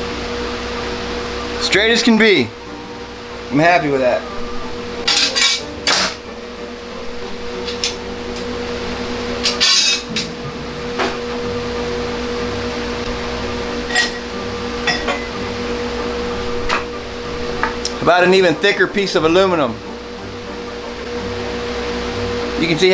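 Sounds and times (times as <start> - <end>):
steady electric hum: 0.0 - 22.9.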